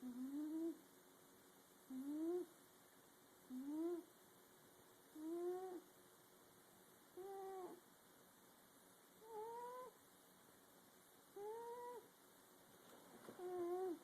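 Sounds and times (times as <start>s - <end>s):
pet snoring quietly: 0.0s - 0.8s, 1.9s - 2.5s, 3.5s - 4.0s, 5.1s - 5.8s, 13.4s - 14.0s.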